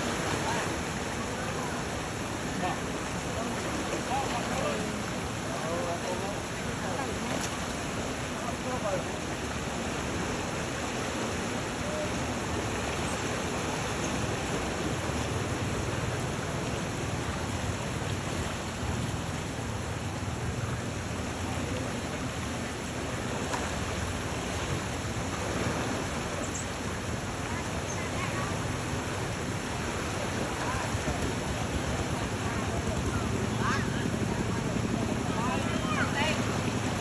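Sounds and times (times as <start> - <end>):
rushing water: 0.0 - 37.0.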